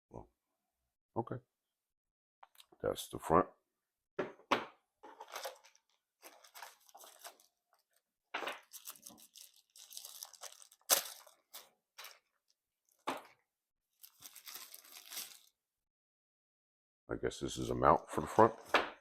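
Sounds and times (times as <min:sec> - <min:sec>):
packaging crinkling and rustling: 0:05.0 - 0:13.4, 0:14.0 - 0:15.6.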